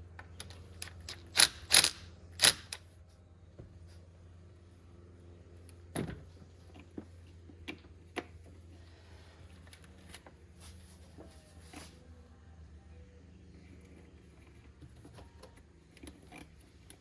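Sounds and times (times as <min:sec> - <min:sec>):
faint low hum: 0:00.0 - 0:17.0
tools clicking and knocking: 0:00.2 - 0:02.8.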